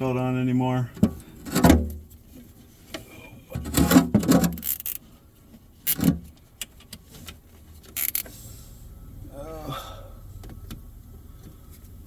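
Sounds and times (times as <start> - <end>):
sharp clicks: 4.5 - 5.0, 5.9 - 6.7, 8.0 - 8.3.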